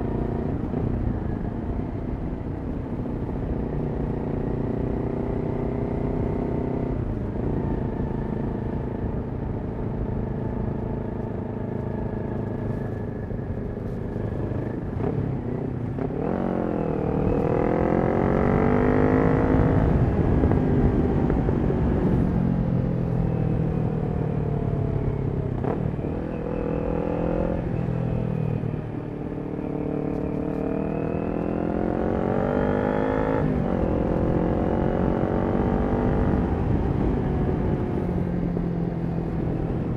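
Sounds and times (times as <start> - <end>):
motorcycle engine revving: 13.6 - 22.8, 29.3 - 39.9.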